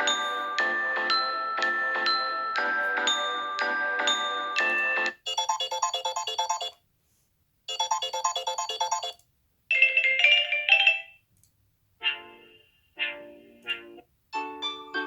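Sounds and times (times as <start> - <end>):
electronic phone ringtones: 0.0 - 6.8, 7.7 - 9.2.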